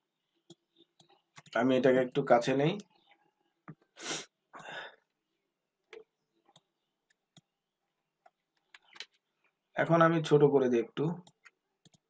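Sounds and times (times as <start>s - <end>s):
breath noises: 4.0s - 5.1s
computer mouse clicks: 11.2s - 12.0s.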